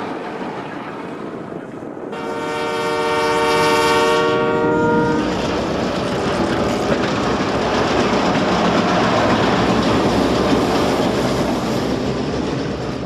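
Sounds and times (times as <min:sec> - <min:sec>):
train rumbling past: 0:00.0 - 0:13.0
wheels clickety-clack: 0:04.9 - 0:13.0.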